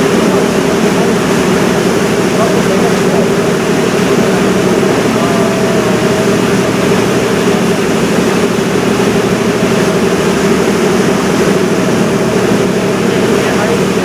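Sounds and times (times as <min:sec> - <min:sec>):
boat engine droning: 0:00.0 - 0:14.0.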